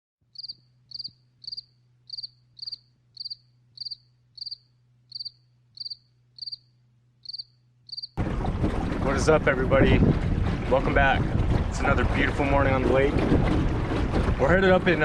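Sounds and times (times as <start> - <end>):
cricket chirping: 0.3 - 8.2.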